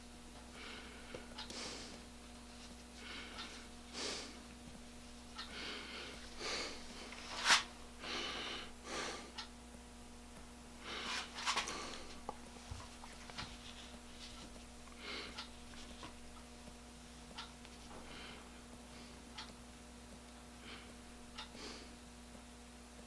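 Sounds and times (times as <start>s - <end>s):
person breathing heavily through nose: 0.5s - 2.1s, 2.9s - 4.5s, 5.4s - 9.4s, 10.8s - 12.2s, 15.0s - 15.5s, 17.9s - 19.2s, 20.6s - 22.0s.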